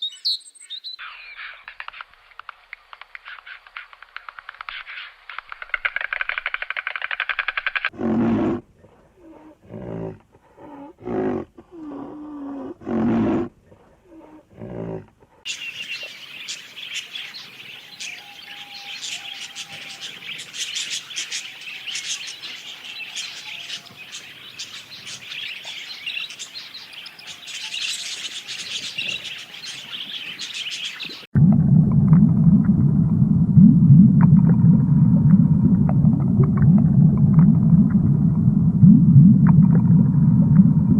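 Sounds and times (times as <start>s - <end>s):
small birds chirping in chorus: 0.0s - 1.9s, 15.4s - 31.3s.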